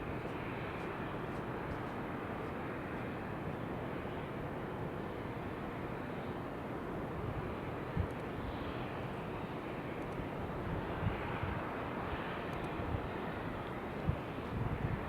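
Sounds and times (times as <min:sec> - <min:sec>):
wind buffeting microphone: 0:13.9 - 0:15.0.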